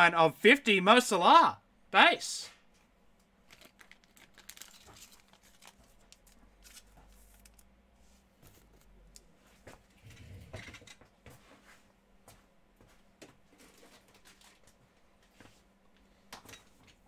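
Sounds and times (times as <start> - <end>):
trading cards rustling and clicking: 3.5 - 7.8.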